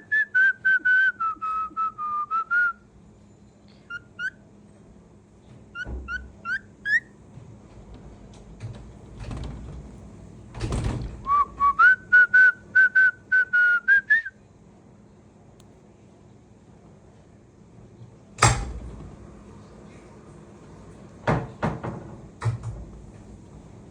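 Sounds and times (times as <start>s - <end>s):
cockatiel whistling: 0.0s - 2.8s, 3.9s - 4.4s, 5.8s - 7.1s, 11.3s - 14.3s.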